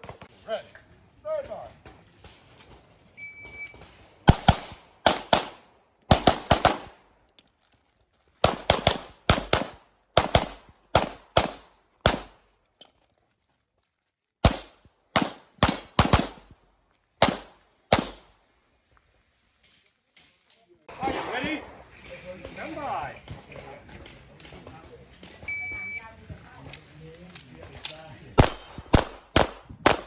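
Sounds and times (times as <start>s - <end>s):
handgun firing rapidly: 4.3s - 7.0s, 8.4s - 12.4s, 14.4s - 16.4s, 17.2s - 18.2s, 28.4s - 30.0s.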